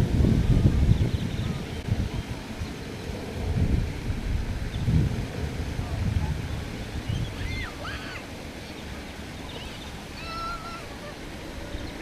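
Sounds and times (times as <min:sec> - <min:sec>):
wind buffeting microphone: 0:00.0 - 0:12.0
birds calling: 0:06.4 - 0:12.0.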